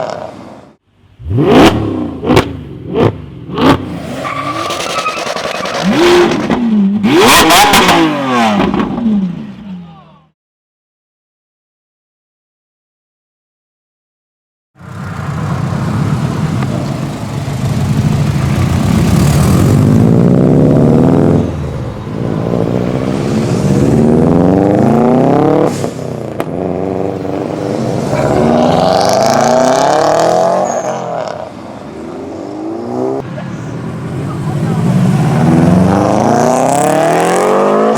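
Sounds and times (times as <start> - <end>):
car engine accelerating hard: 34.5 - 37.9.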